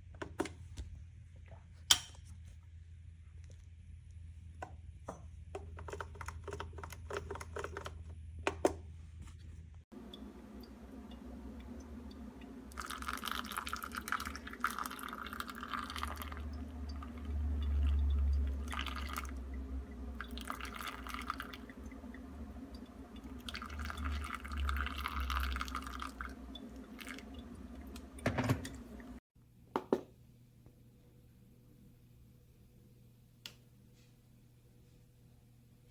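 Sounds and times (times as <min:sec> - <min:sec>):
water pouring into a cup: 0:09.9 - 0:29.2.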